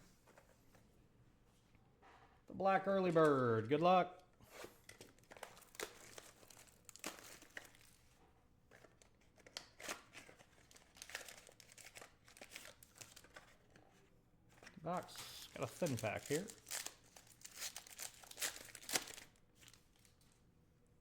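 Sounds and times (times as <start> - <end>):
plastic wrap crinkling and tearing: 4.8 - 8.1, 8.7 - 13.8, 14.6 - 20.3.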